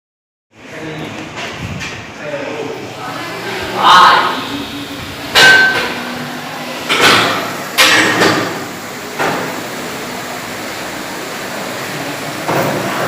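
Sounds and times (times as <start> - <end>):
steady background noise: 0.5 - 13.0.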